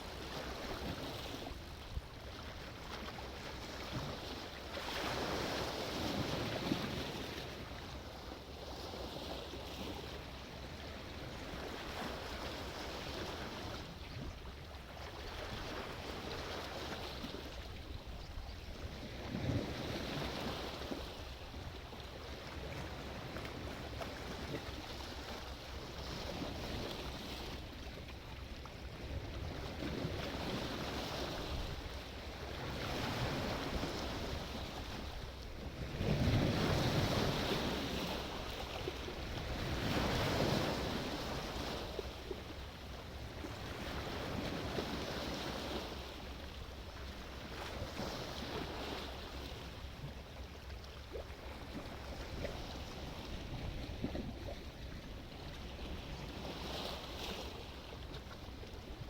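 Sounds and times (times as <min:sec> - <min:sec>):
sea waves breaking: 0:29.6 - 0:46.5.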